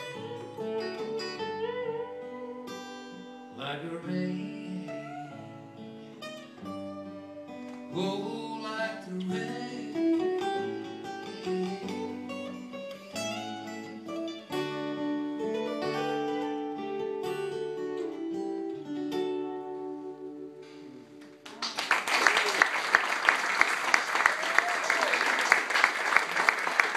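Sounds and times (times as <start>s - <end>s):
guitar chords: 0.0s - 21.5s
picked lead guitar: 0.0s - 21.6s.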